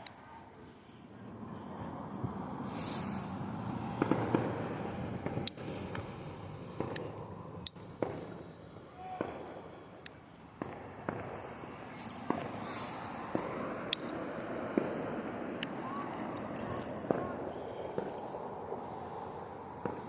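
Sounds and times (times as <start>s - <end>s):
firework hissing: 2.6s - 5.1s, 7.8s - 15.9s
firework pops and cracks: 4.0s - 4.6s, 7.7s - 11.6s.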